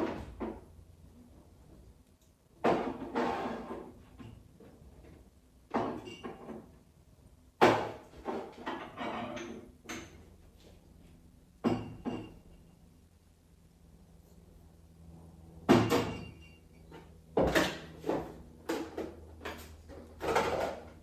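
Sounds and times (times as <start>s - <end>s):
household knocks and clatters: 2.6s - 6.9s, 7.6s - 10.8s, 11.6s - 12.6s, 15.6s - 21.0s.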